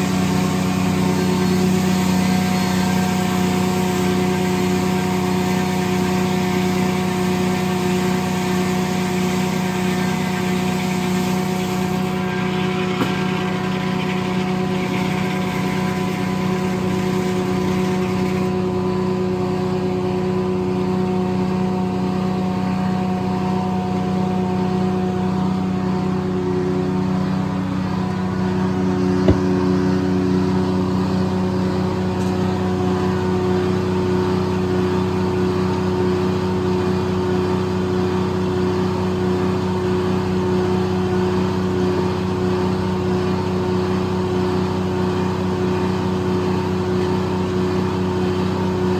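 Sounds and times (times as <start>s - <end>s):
sawmill engine drone: 0.0s - 48.9s
sharp knock: 29.2s - 29.6s.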